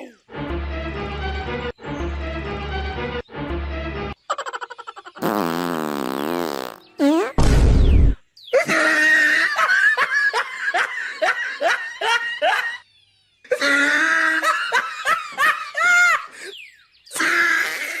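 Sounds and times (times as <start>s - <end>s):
cartoon character belly laugh: 4.3s - 5.6s, 13.5s - 16.3s, 17.2s - 18.0s.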